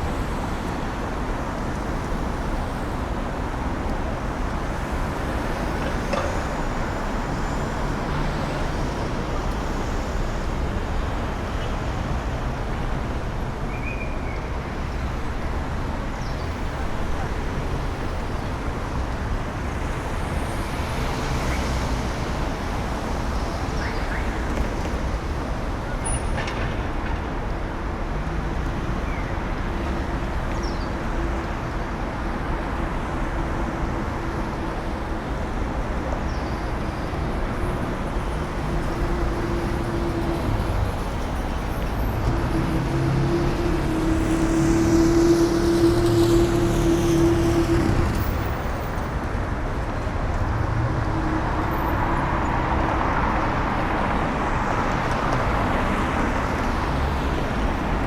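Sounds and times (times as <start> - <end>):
passing cars rumble: 29.7 - 58.0
heavy vehicle engine hum: 32.7 - 58.0.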